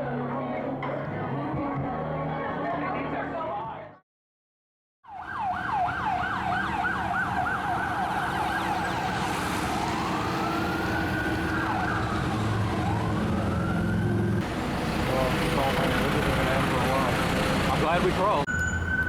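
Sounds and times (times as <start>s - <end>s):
emergency vehicle siren: 5.0s - 19.0s
low traffic hum: 5.4s - 19.0s.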